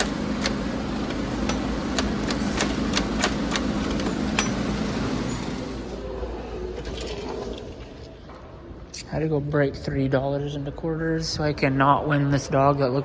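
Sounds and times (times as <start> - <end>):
sharp clicks and knocks: 0.0 - 5.8
low machine hum: 0.0 - 9.6.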